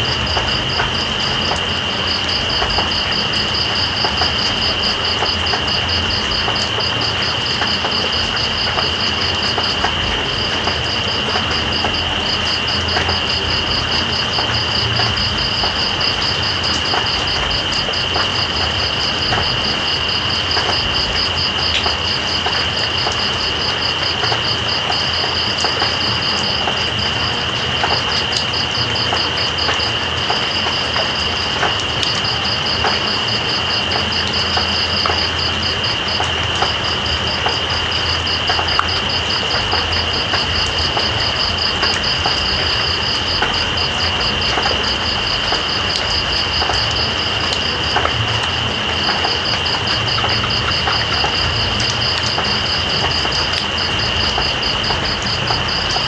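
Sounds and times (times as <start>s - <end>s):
insect high continuous trill: 0.0s - 56.0s
rain hiss: 0.0s - 56.0s.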